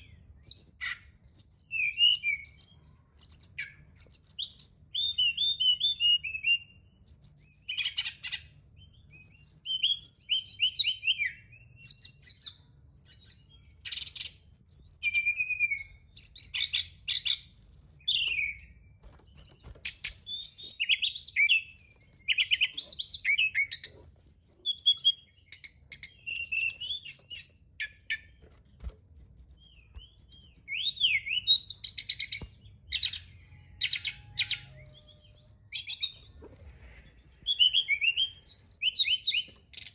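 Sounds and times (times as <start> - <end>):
bird singing whistled trills: 0.0 - 28.4, 29.4 - 39.9.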